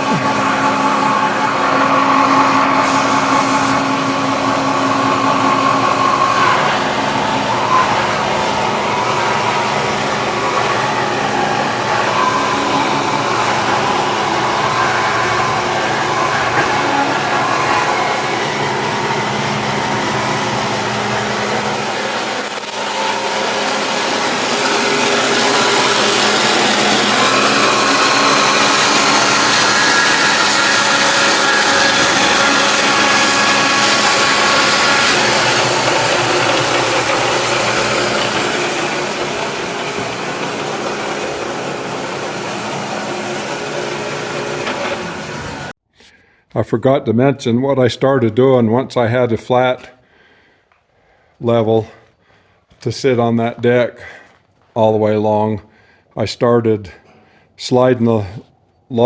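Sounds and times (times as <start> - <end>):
band saw cutting log: 0.0 - 45.8.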